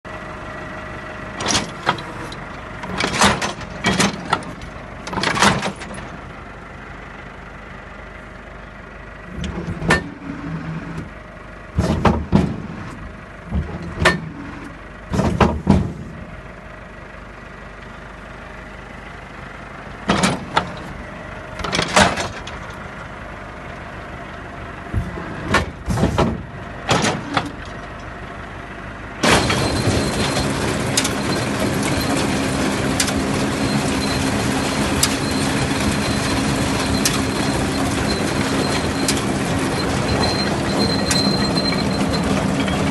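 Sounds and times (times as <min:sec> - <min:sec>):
machinery humming: 0:00.1 - 0:42.9
clanks and rattles: 0:01.4 - 0:06.2, 0:09.3 - 0:11.1, 0:11.8 - 0:16.4, 0:20.0 - 0:21.0, 0:21.6 - 0:22.8, 0:24.9 - 0:28.1, 0:29.2 - 0:42.9.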